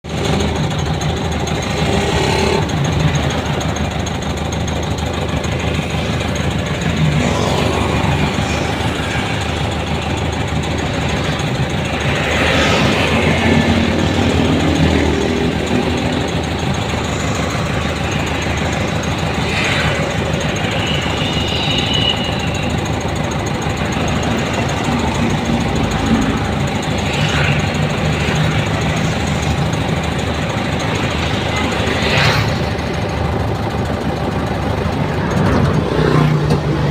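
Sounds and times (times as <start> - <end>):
road noise: 0.0 - 36.9
vehicle engine running: 0.0 - 36.9.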